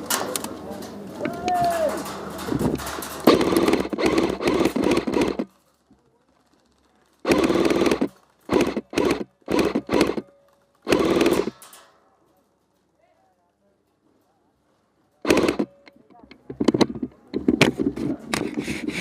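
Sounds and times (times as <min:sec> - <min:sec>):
airsoft gun bursts: 0:03.2 - 0:05.5, 0:07.2 - 0:11.7, 0:15.2 - 0:15.9.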